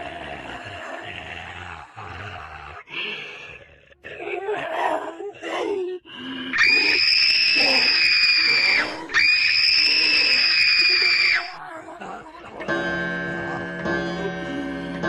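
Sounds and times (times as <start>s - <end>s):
rough growls: 0.0s - 6.9s
piercing shrieks: 6.6s - 11.6s.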